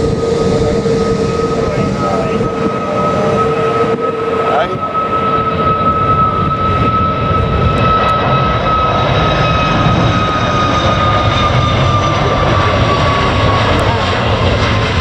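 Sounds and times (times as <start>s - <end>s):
jet taking off: 0.0s - 15.0s.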